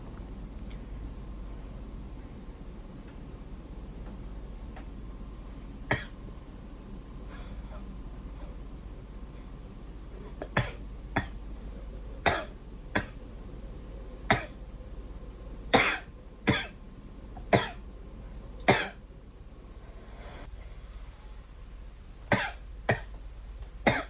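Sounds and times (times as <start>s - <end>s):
steady low hum: 0.0s - 24.0s
girl coughing: 10.4s - 11.4s, 12.3s - 13.2s, 15.8s - 16.8s, 17.5s - 17.8s, 18.7s - 19.0s, 22.3s - 23.1s.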